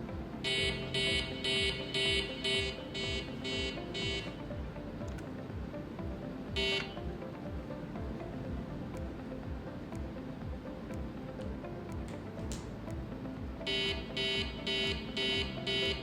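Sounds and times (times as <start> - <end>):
background music with steady beat: 0.0 - 16.0
alarm clock beeping: 0.4 - 4.4, 6.6 - 7.0, 13.7 - 16.0.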